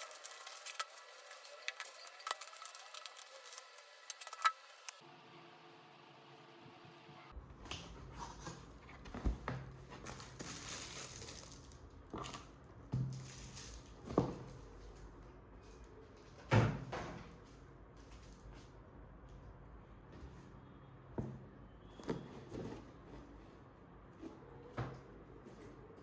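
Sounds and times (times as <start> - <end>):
packaging crinkling: 0.0 - 4.0, 9.9 - 12.4.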